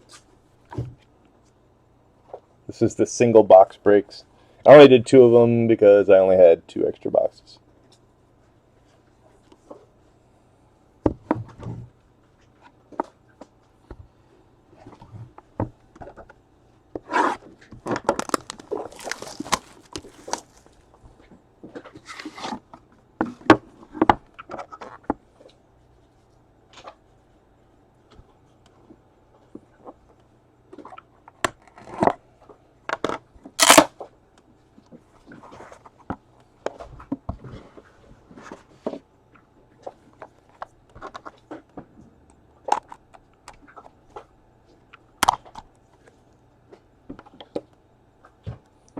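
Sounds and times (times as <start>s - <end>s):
plastic wrap crinkling and tearing: 17.9s - 20.9s.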